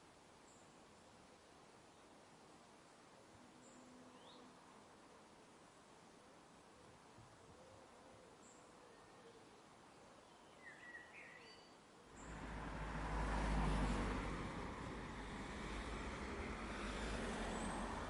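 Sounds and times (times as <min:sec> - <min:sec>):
bird chirping: 0:10.2 - 0:12.4.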